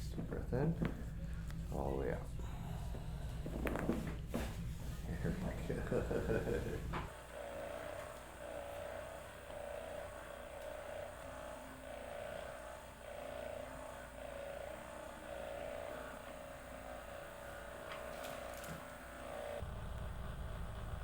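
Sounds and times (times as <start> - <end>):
small electric motor humming: 5.1 - 21.0.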